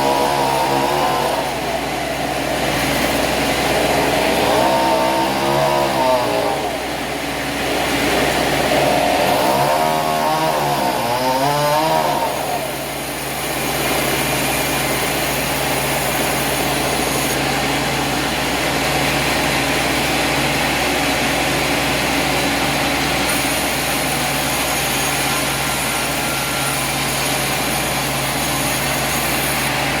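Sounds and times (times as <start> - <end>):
engine revving: 0.0 - 13.0.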